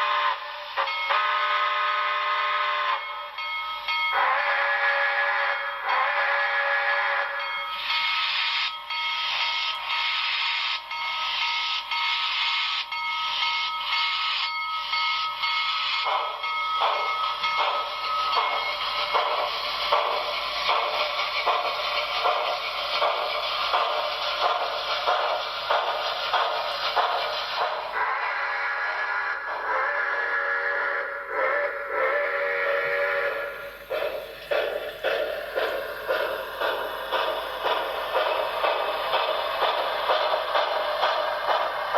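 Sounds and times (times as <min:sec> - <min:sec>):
chime steam whistle: 0:00.0 - 0:41.9
steam exhaust chuffing: 0:15.8 - 0:41.9.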